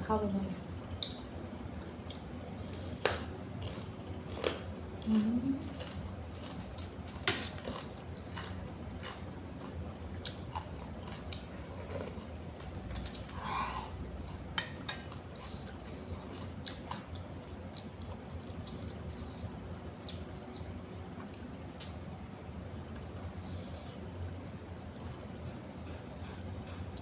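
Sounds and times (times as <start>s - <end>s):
chewing with crisp crunches: 0.9s - 22.0s.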